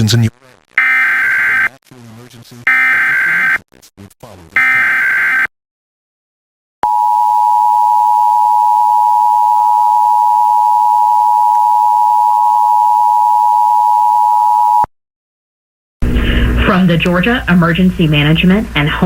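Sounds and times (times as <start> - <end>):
two-tone alert tone: 4.6 - 5.5.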